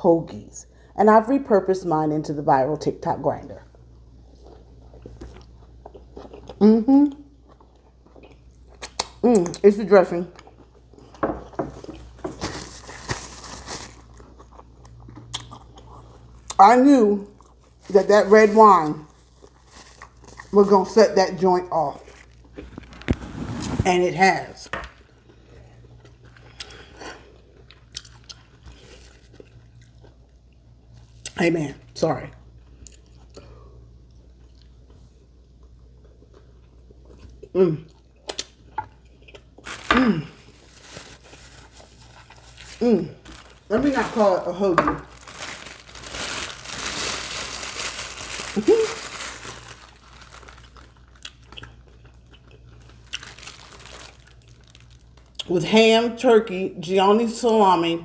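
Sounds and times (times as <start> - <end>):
low steady hum: 0.0 - 58.0
person chewing food: 4.1 - 9.2, 10.3 - 12.3, 13.9 - 16.6, 17.3 - 17.8, 25.0 - 31.2, 32.6 - 40.8, 45.2 - 55.4.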